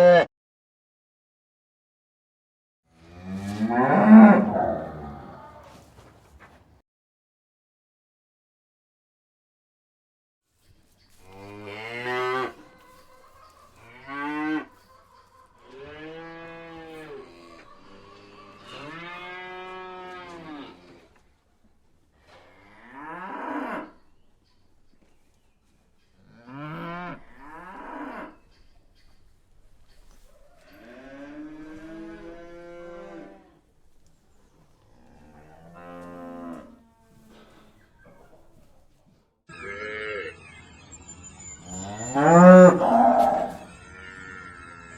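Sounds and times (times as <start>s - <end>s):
cow mooing: 0.0s - 0.3s, 2.9s - 5.8s, 11.2s - 13.2s, 13.8s - 14.8s, 15.6s - 21.2s, 22.3s - 24.1s, 26.3s - 28.5s, 30.6s - 33.6s, 34.9s - 37.8s, 41.6s - 44.9s.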